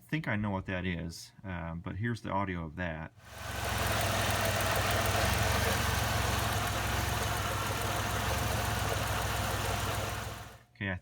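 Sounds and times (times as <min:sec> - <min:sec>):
car engine idling: 0:03.3 - 0:10.6
engine ticking noise: 0:03.3 - 0:10.6.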